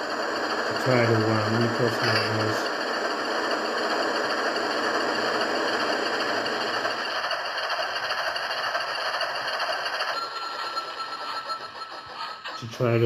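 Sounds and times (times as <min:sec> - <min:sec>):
diesel engine sound from small speaker: 0:00.0 - 0:02.8
electric motors humming: 0:00.0 - 0:07.2.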